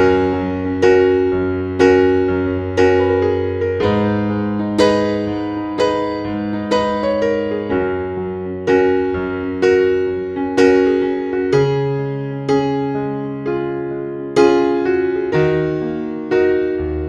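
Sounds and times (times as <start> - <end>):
slow gentle solo piano: 0.0 - 17.0.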